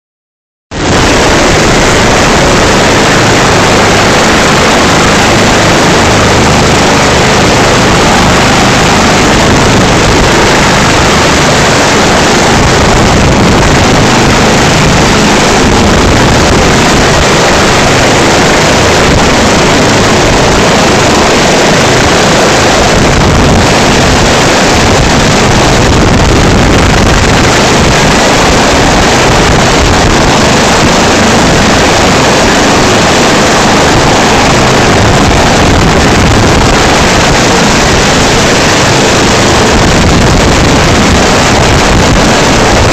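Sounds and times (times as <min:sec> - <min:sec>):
helicopter noise: 0:00.7 - 0:42.9
rotor downwash buffeting microphone: 0:00.7 - 0:42.9.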